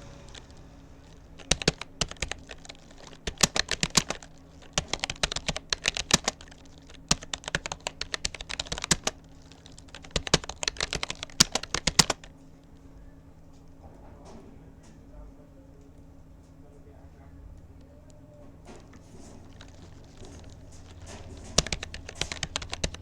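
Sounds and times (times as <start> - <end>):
keyboard typing clicks: 0.0 - 12.3, 18.8 - 23.0.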